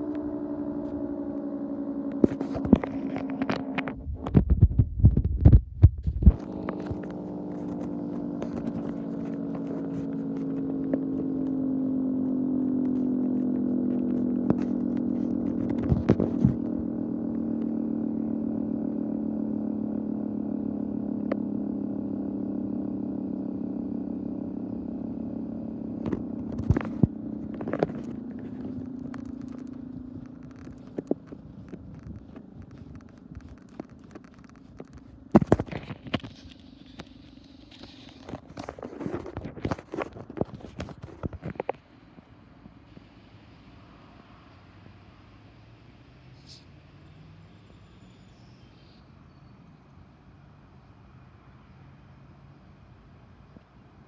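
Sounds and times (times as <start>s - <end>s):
three-tone siren: 0.0s - 4.3s
thumps on microphone: 2.2s - 9.9s, 13.4s - 16.7s, 26.0s - 41.8s.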